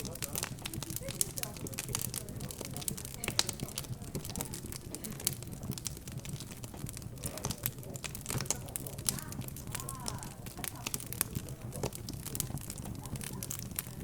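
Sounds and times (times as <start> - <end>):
background chatter: 0.0 - 14.0
fireplace crackling and popping: 0.0 - 14.0.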